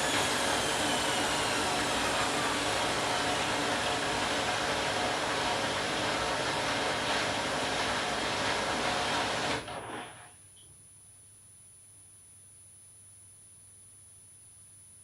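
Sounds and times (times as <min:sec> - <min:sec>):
washing machine drum spinning: 0:00.0 - 0:10.2.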